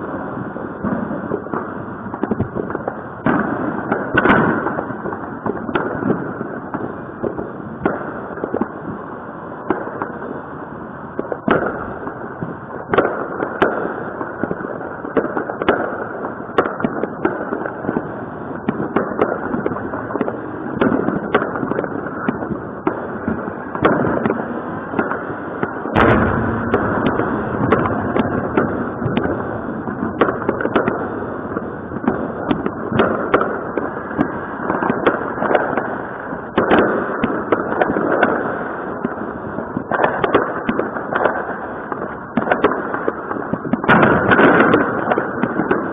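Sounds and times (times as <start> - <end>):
fireworks and firecrackers bangs: 0.0 - 45.9
rumbling distant explosions: 16.7 - 36.0.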